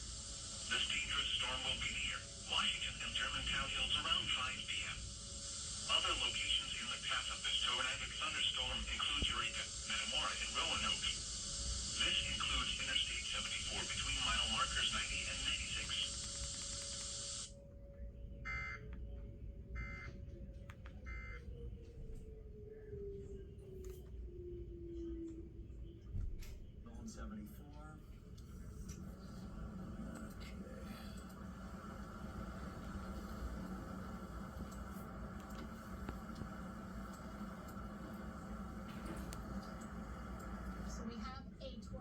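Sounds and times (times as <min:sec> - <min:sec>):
raspy digital buzzes: 0:00.0 - 0:17.5
faint steady tone: 0:00.0 - 0:42.0
low electrical hum: 0:00.0 - 0:42.0
faint clicks: 0:32.8 - 0:40.9.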